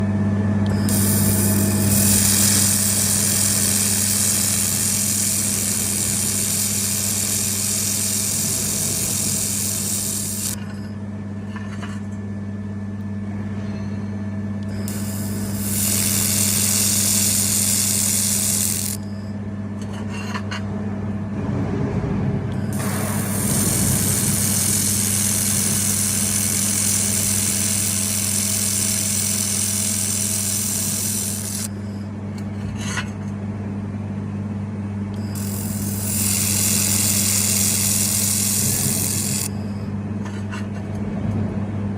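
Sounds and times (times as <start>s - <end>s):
welding machine humming: 0.0s - 12.1s, 14.6s - 20.5s, 22.5s - 32.0s, 35.1s - 41.0s.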